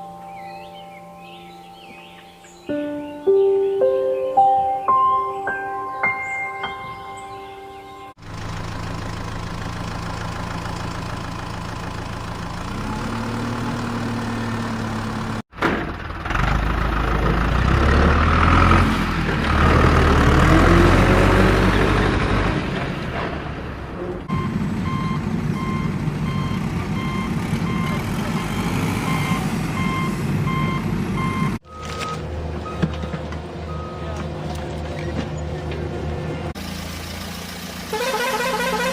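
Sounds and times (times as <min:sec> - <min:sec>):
deep engine rumble: 0:08.1 - 0:18.6
truck engine hum: 0:08.1 - 0:38.9
reversing alarm beeping: 0:24.3 - 0:32.9, 0:33.7 - 0:34.2.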